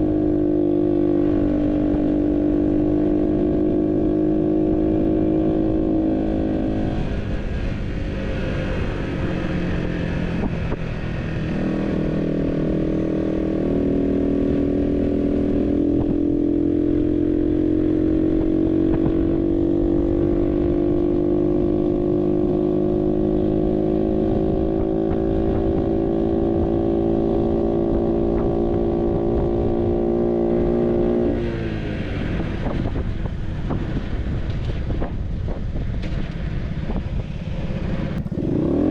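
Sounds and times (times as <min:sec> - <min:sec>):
moped engine running: 0:31.4 - 0:38.9.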